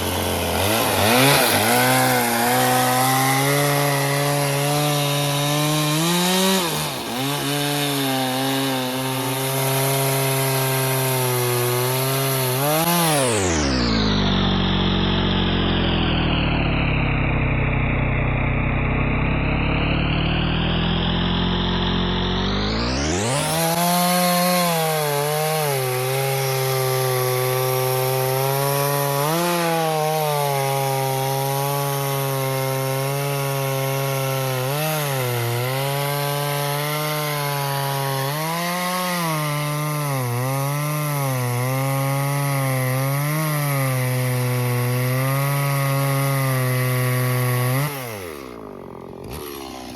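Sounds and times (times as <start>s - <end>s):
chainsaw cutting wood: 0.0s - 49.9s.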